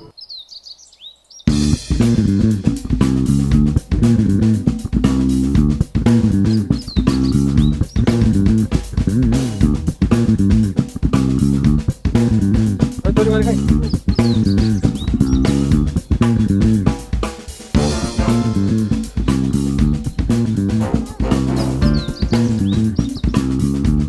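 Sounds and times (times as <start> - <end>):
bass guitar: 1.5 - 24.0
drum beat: 1.5 - 24.0
plucked guitar: 17.8 - 23.4.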